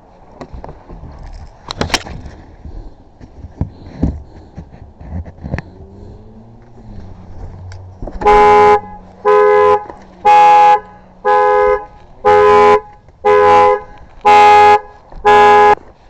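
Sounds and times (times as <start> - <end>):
car horn alarm blasts: 8.2 - 15.8.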